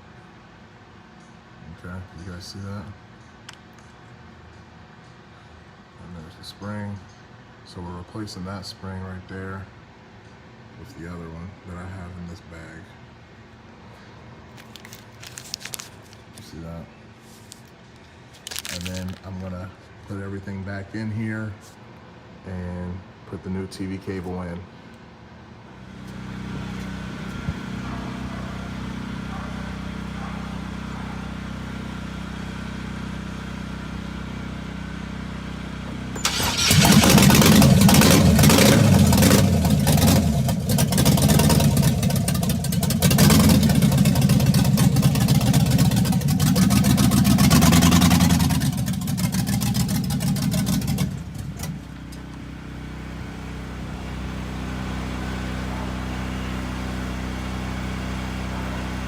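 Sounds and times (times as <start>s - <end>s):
engine running steadily: 22.5s - 59.0s.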